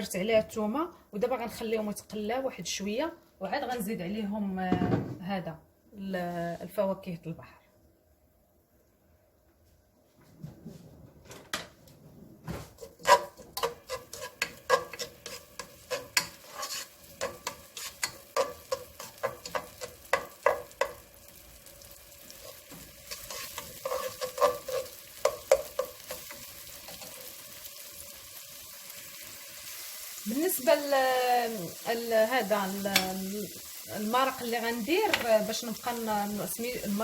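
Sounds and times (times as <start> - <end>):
onion and garlic frying in oil: 12.7 - 37.0
spoon knocking against frying pan: 17.2 - 21.0, 25.2 - 26.2.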